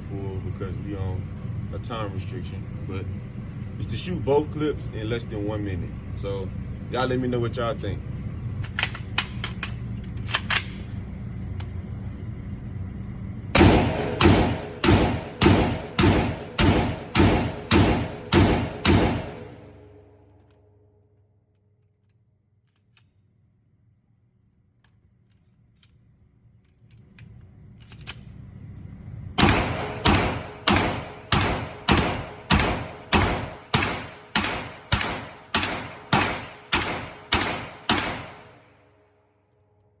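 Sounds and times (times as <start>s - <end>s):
gunshots with ringing tail: 13.6s - 20.2s, 29.4s - 38.8s.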